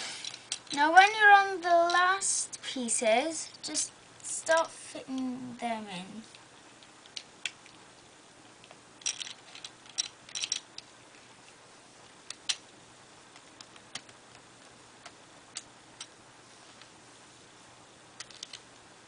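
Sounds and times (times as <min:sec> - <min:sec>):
plastic puzzle pieces clicking: 0:18.2 - 0:18.6.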